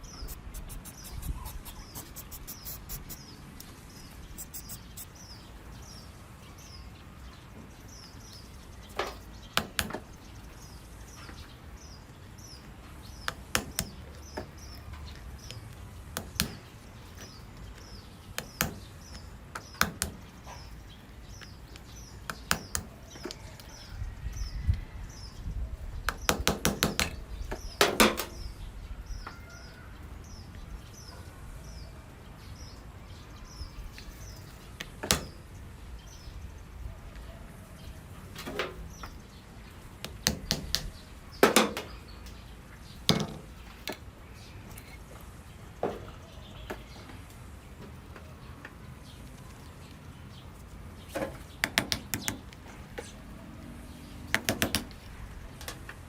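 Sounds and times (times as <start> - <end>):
small bird chirping: 0.0 - 31.9.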